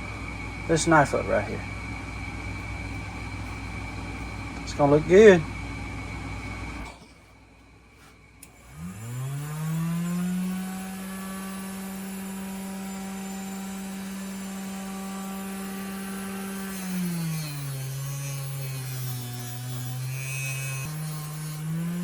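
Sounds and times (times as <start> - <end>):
bench grinder motor hum: 8.4 - 22.0.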